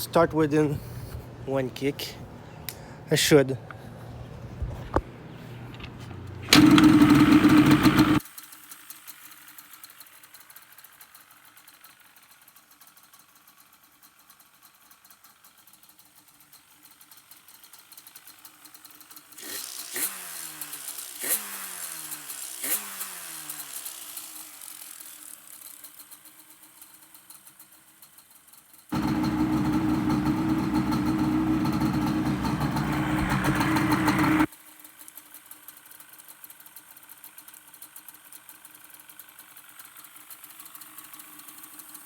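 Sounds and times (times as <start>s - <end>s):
two-stroke engine revving: 6.4s - 8.2s, 19.3s - 25.7s, 28.9s - 34.5s.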